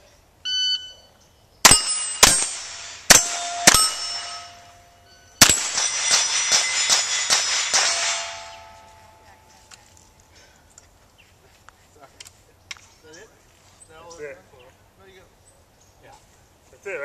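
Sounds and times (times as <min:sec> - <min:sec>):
rifle shots: 0:01.6 - 0:04.6, 0:05.4 - 0:08.7
steel targets ringing: 0:01.6 - 0:09.7.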